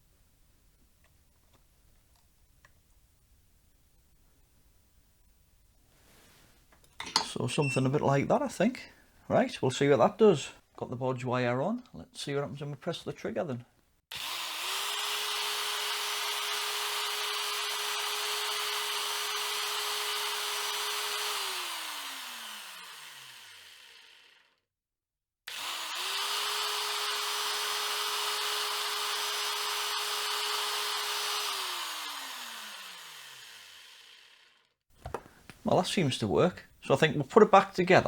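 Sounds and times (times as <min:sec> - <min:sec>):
angle grinder motor spinning: 0:14.1 - 0:24.6, 0:25.5 - 0:35.2.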